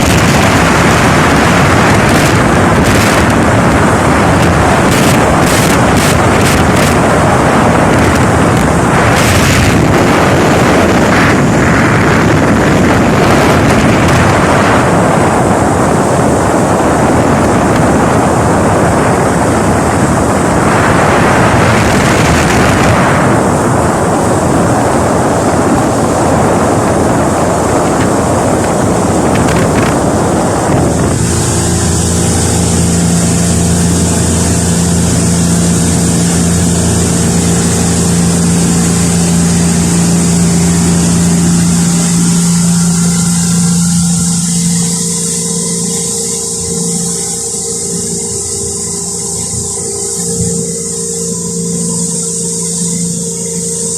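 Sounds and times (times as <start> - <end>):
outboard engine: 0.0 - 53.9
water rushing: 0.0 - 53.9
wind buffeting microphone: 0.0 - 53.9.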